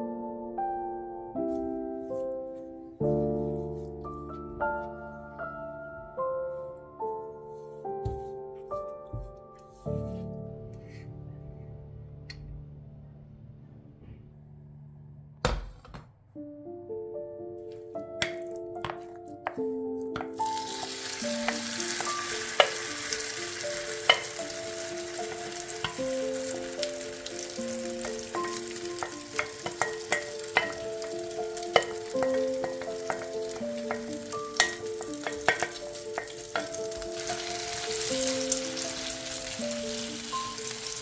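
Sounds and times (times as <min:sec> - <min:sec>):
gentle melodic background music: 0:00.0 - 0:14.6, 0:16.3 - 0:41.0
food sizzling in a frying pan: 0:18.2 - 0:41.0.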